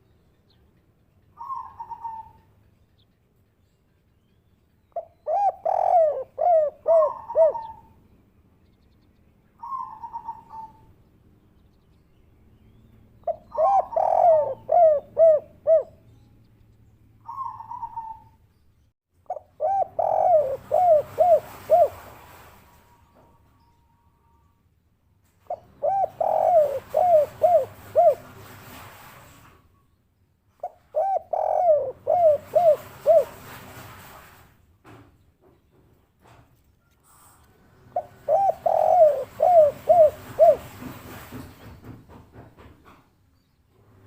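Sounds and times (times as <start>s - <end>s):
dove cooing: 1.4s - 2.5s, 5.0s - 8.0s, 9.6s - 10.9s, 13.2s - 16.0s, 17.2s - 18.4s, 19.3s - 22.4s, 25.5s - 28.5s, 30.6s - 33.6s, 37.9s - 41.0s.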